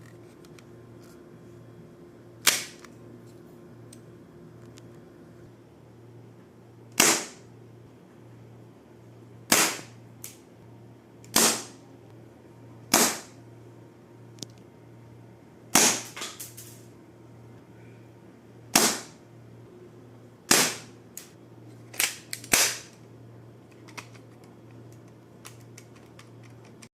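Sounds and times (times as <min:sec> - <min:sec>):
toy pistol cracks: 0:02.5 - 0:02.8, 0:22.0 - 0:22.9.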